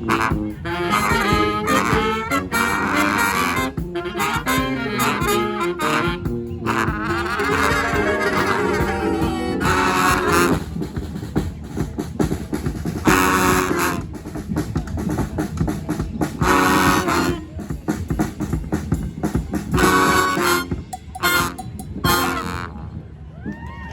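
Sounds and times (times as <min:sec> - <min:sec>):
brass band playing: 0:00.0 - 0:11.4, 0:12.8 - 0:14.4, 0:16.3 - 0:18.4, 0:19.5 - 0:22.8
drum beats: 0:00.0 - 0:22.5.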